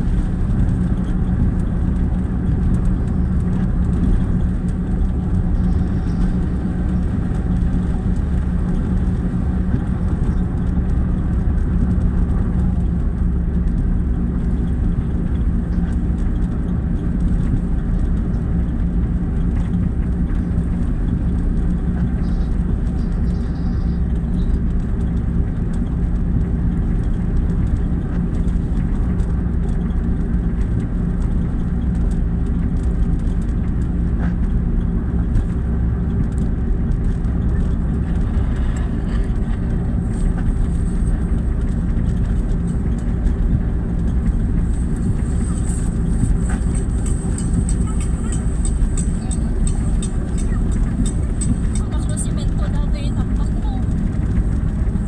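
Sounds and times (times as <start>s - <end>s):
engine humming steadily: 0.0s - 55.0s.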